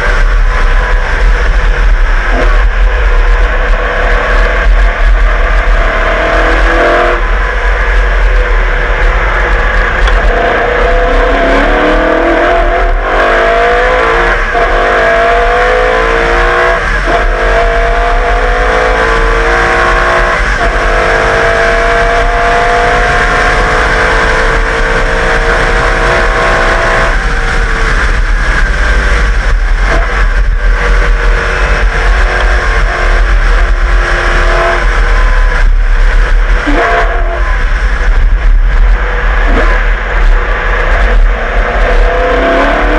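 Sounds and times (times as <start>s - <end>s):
racing engine accelerating: 0.0s - 42.9s.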